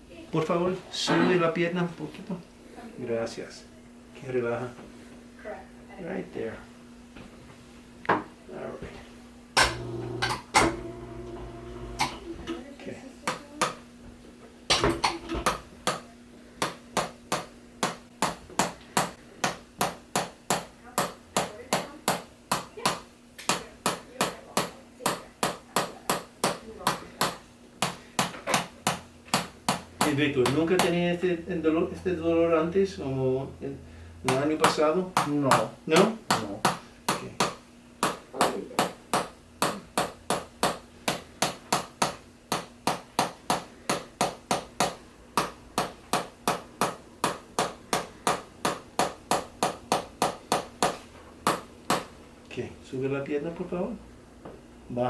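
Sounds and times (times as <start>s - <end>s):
rhythmic tapping on a body: 13.2s - 31.0s, 34.2s - 52.2s.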